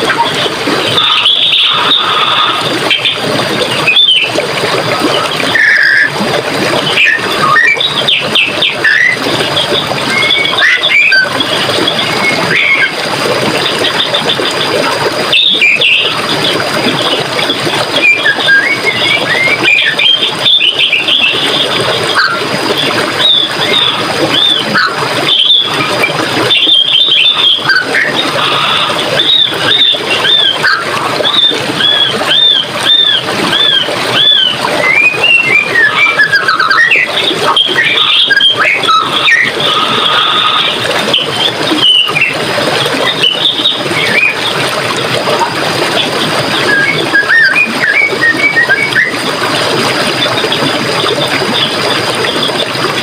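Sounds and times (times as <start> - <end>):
stream water rushing: 0.0 - 53.0
birds chirping and singing: 0.1 - 4.4, 6.8 - 12.9, 15.3 - 17.2, 17.9 - 42.4, 43.0 - 44.6.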